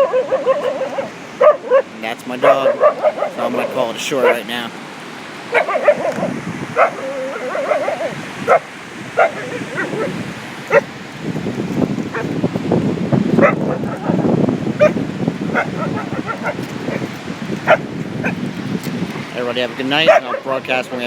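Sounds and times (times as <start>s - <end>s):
dog whining: 0.0s - 3.4s, 5.5s - 10.9s, 12.1s - 12.3s, 14.8s - 18.4s
dog barking and yipping: 0.0s - 4.5s, 5.4s - 10.9s, 12.1s - 12.4s, 13.4s - 14.2s, 14.8s - 18.4s, 20.0s - 20.6s.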